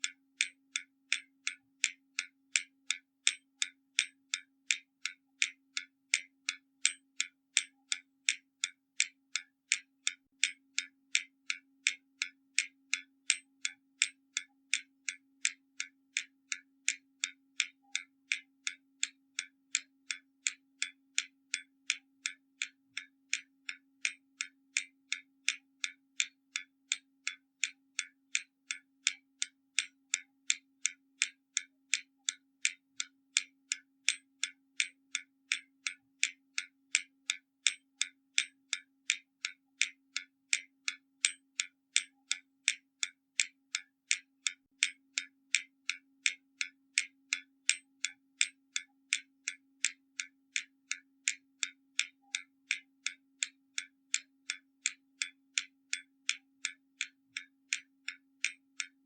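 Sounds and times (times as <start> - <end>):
clock ticking: 0.0 - 59.0.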